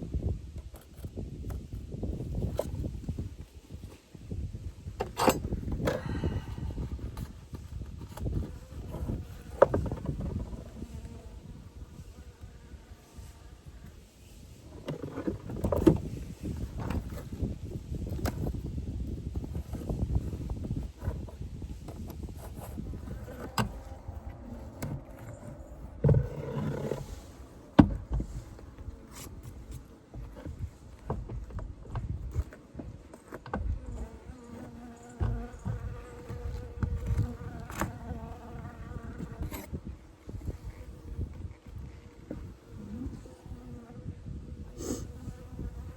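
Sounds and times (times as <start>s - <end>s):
honeybees buzzing: 8.3s - 18.6s, 21.4s - 31.1s, 33.6s - 41.5s.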